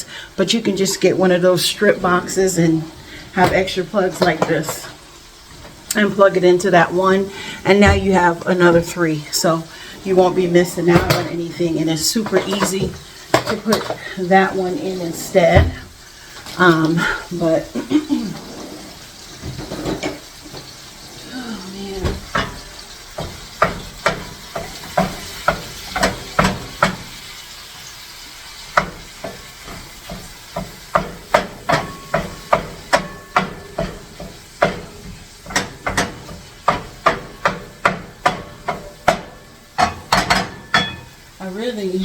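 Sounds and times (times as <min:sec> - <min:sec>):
faint steady hiss: 0:00.0 - 0:42.0.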